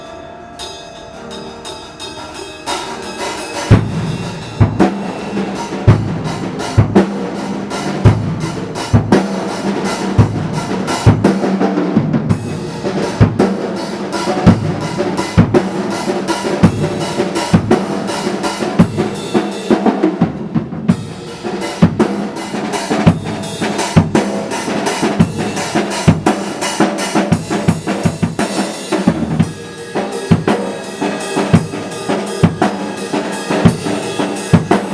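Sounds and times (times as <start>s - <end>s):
accompanying music: 0.0s - 34.9s
snare and cymbal hits: 0.0s - 34.9s
bass drum: 3.7s - 13.6s, 14.3s - 15.9s.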